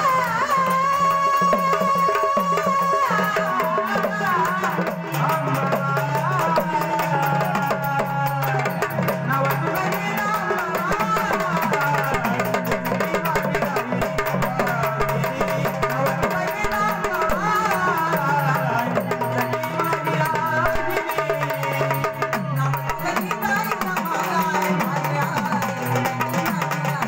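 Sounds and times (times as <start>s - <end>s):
fast drum and percussion beat: 0.0s - 27.0s
person singing: 0.0s - 27.0s.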